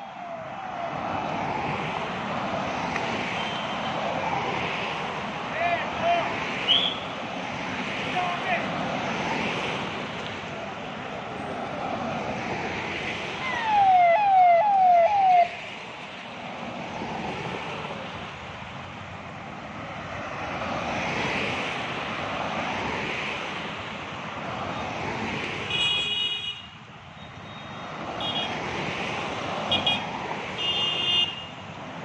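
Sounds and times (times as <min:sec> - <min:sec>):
road traffic passing: 0:00.0 - 0:32.0
vehicle horn toots: 0:30.6 - 0:31.5.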